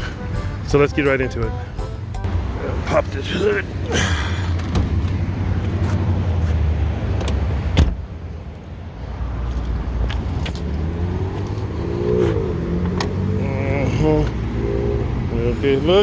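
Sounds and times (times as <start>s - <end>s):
low vehicle rumble: 0.0s - 16.0s
car hood latch click: 7.2s - 8.0s.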